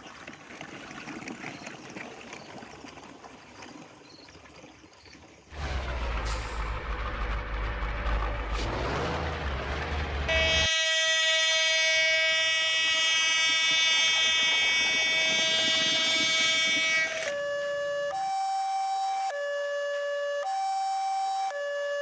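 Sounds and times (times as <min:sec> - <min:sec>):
train rumbling: 0:05.6 - 0:10.7
two-tone siren: 0:10.2 - 0:22.0
train horn blast: 0:10.3 - 0:17.3.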